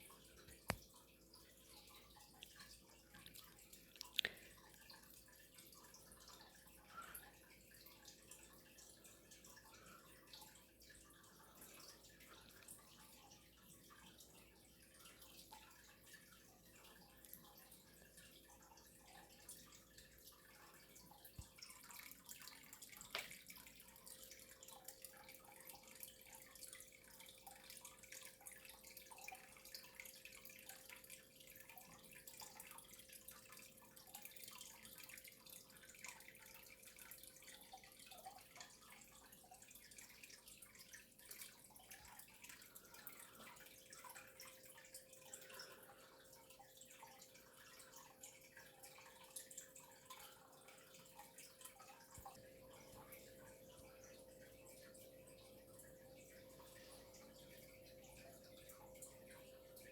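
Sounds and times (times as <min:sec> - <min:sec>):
faint steady hum: 0:00.0 - 0:59.9
small ticks: 0:01.9 - 0:05.3.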